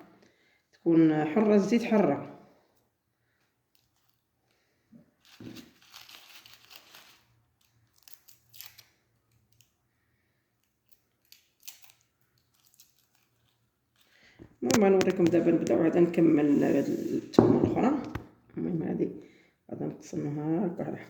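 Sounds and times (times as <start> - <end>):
garlic skins crinkling and tearing: 5.2 - 9.7.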